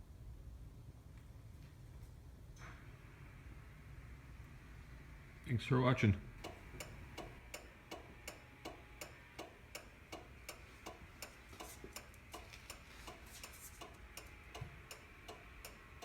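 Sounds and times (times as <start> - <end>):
turn signal relay clicking: 6.4 - 16.0.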